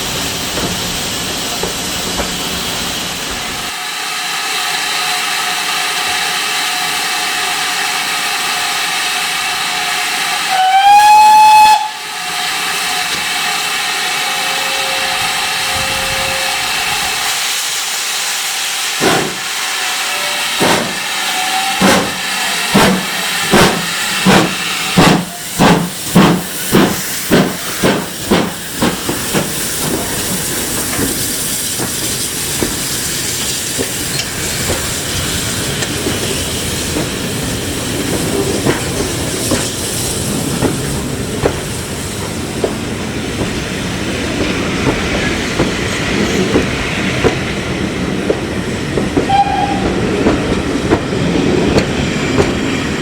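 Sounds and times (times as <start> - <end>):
steam hissing: 0.0 - 53.0
steam whistle blast: 10.4 - 12.2, 14.2 - 17.1, 19.9 - 22.2, 49.3 - 50.0
locomotive exhaust chuffing: 20.6 - 47.5.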